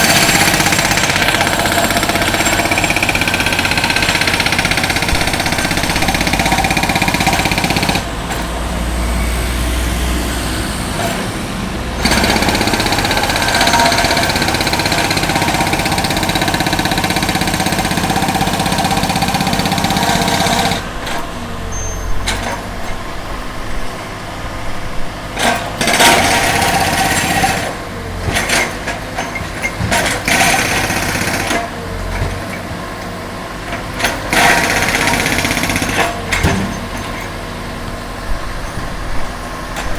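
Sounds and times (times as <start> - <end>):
concrete breaker hammering: 0.0 - 8.7, 10.9 - 21.6, 25.2 - 37.7
machine engine running: 0.0 - 28.9.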